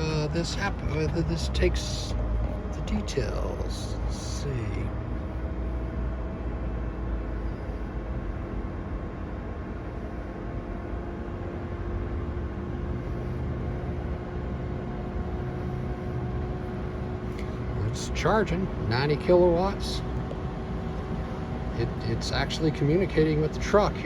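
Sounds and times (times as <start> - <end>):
charger cooling fans whirring: 0.0 - 24.0.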